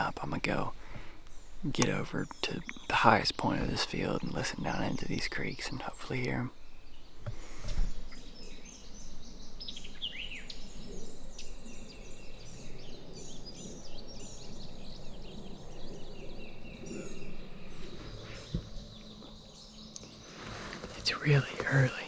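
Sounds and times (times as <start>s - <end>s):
songbirds chirping and trilling: 0.0s - 22.0s.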